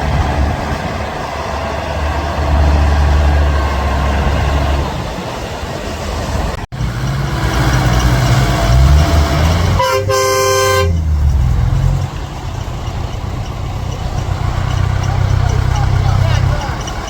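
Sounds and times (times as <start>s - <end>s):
vehicle engines rumbling: 0.0s - 17.0s
car horn blast: 9.7s - 11.3s.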